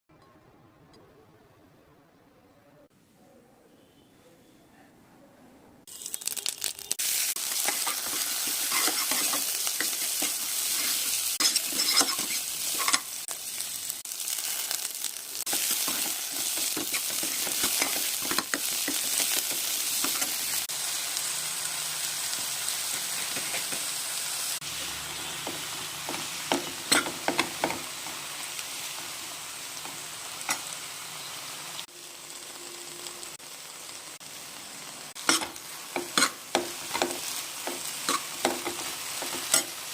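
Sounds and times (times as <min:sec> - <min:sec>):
potatoes sizzling in hot oil: 0:05.9 - 0:39.9
spatula scraping a pan: 0:07.6 - 0:13.2, 0:35.3 - 0:36.4.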